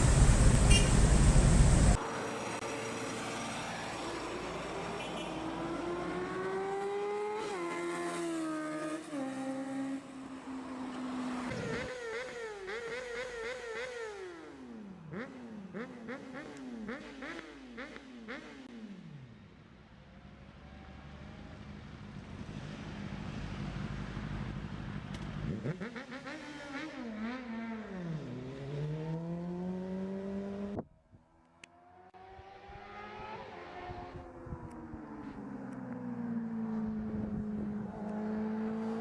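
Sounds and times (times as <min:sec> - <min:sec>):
motorcycle engine revving: 0:05.2 - 0:10.0, 0:11.2 - 0:19.3, 0:22.4 - 0:30.8.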